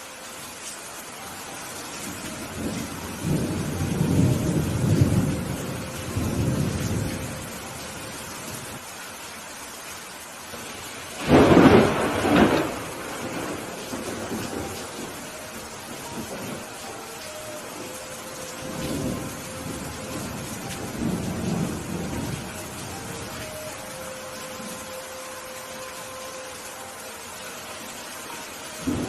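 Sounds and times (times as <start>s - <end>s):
steady rain: 0.0s - 29.0s
thunder rumbling: 2.1s - 8.8s, 10.6s - 25.0s, 28.8s - 29.0s.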